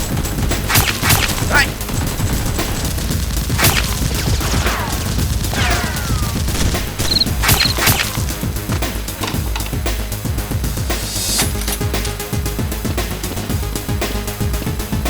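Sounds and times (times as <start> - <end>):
gunshots: 0.0 - 9.6.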